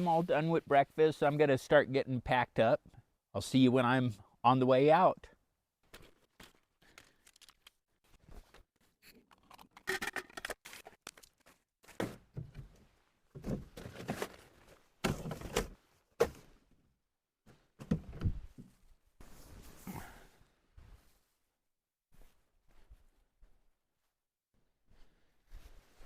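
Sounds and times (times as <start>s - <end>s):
camping gear knocking and scraping: 5.8s - 8.8s, 11.8s - 16.6s, 17.5s - 20.0s.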